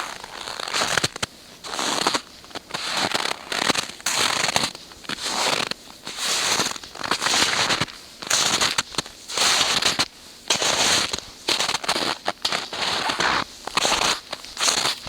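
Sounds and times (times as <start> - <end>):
footsteps crunching in snow: 0.0 - 15.0.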